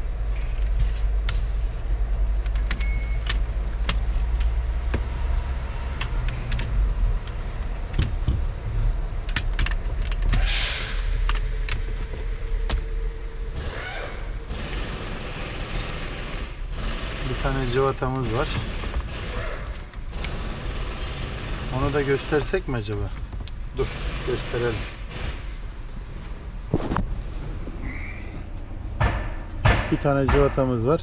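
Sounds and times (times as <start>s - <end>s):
low rumble: 4.4s - 15.8s
plastic parts clicking: 9.2s - 10.5s.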